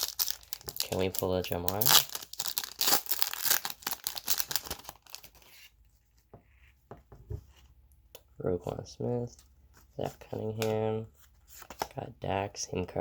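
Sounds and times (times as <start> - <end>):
foil pack tearing and crinkling: 0.0 - 5.4.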